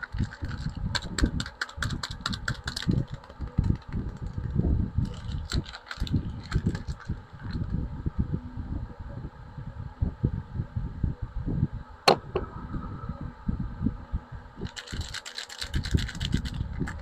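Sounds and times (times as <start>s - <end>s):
packaging rustling and crinkling: 5.0s - 7.7s, 14.6s - 17.0s.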